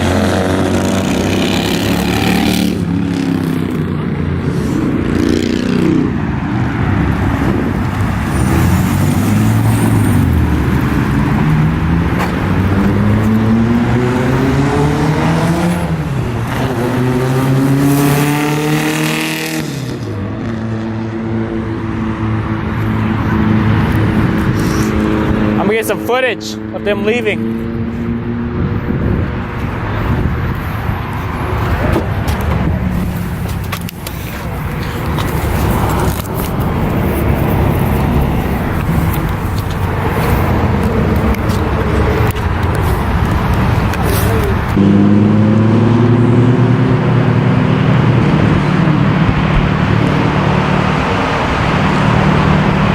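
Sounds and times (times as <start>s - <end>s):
car engine accelerating: 0.0s - 52.9s.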